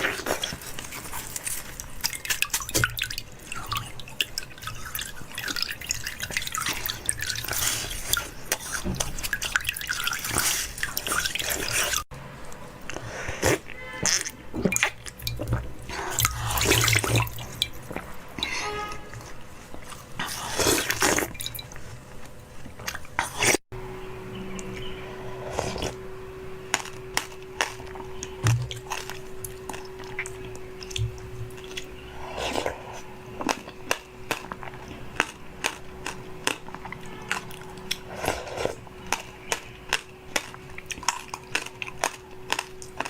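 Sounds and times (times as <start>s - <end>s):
wet smacking and slurping: 0.0s - 12.1s, 12.9s - 23.6s.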